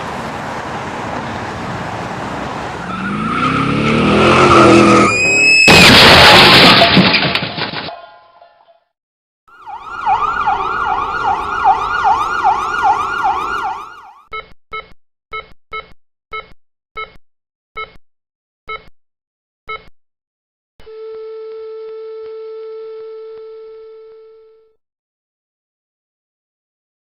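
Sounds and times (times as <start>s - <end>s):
siren sweeping: 2.8s - 5.7s, 9.5s - 14.2s.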